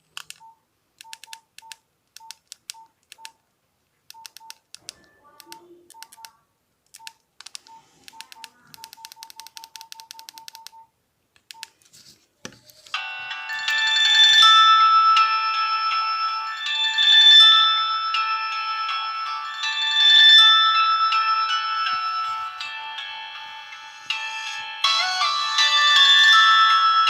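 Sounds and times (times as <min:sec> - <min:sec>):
phone keypad beeps: 0:00.3 - 0:03.4, 0:04.1 - 0:06.4, 0:07.0 - 0:10.9, 0:11.5 - 0:11.7
phone ringtone tune: 0:12.9 - 0:27.0.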